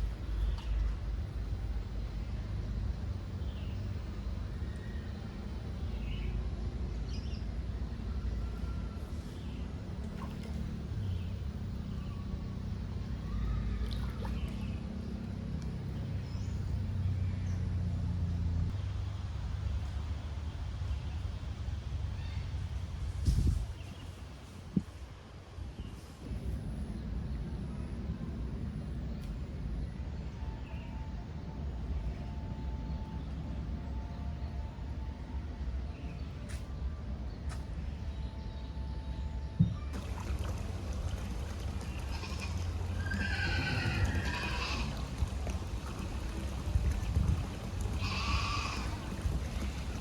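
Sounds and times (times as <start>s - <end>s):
low engine drone: 0.0s - 23.6s, 26.2s - 50.0s
low rumble: 26.2s - 35.4s.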